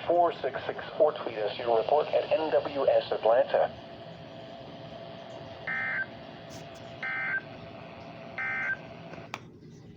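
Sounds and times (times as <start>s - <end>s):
faint radio hiss: 0.0s - 5.6s.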